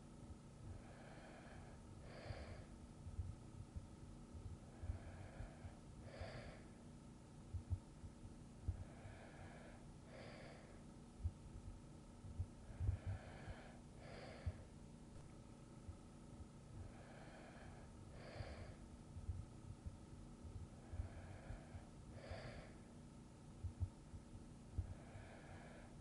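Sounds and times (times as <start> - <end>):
soft sleeping breaths: 0.0 - 26.0
faint low bumps: 11.2 - 13.8, 18.4 - 21.8.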